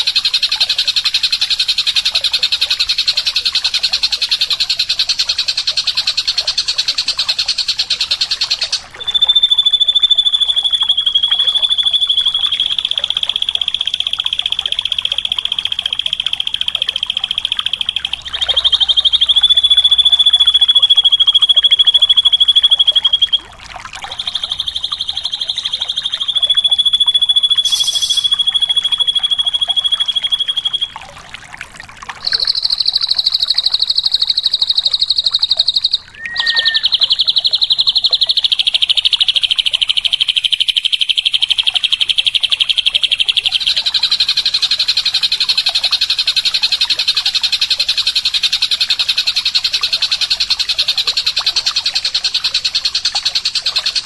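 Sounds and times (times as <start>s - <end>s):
bird buzzy trill: 0.0s - 31.2s, 32.2s - 46.0s
high thin bird trill: 8.1s - 31.1s, 32.2s - 42.1s.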